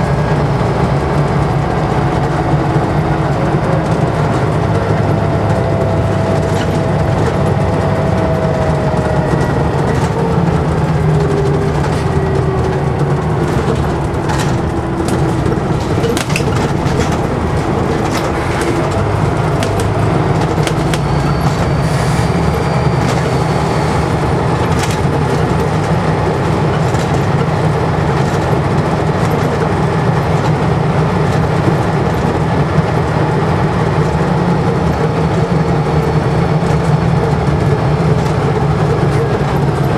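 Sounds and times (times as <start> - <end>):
bodywork rattles and clicks: 0.0 - 39.9
bus engine drone with whines: 0.0 - 39.9
faint turbo whistle: 20.1 - 24.3.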